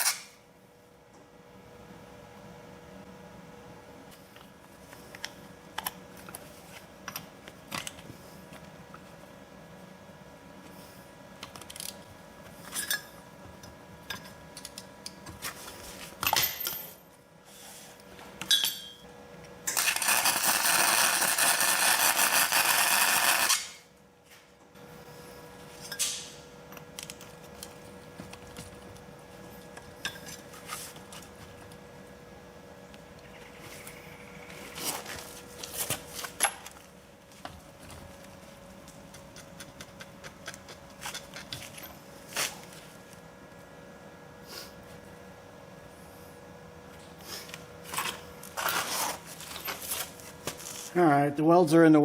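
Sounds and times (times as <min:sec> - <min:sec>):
metal tools clinking: 0:18.4 - 0:19.0
welding crackling hiss: 0:19.7 - 0:23.8.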